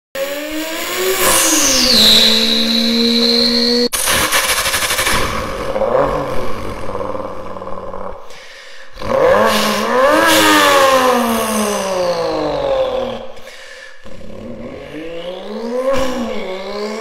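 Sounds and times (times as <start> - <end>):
car engine revving: 0.2 - 17.0
exhaust crackling pops: 3.9 - 6.9.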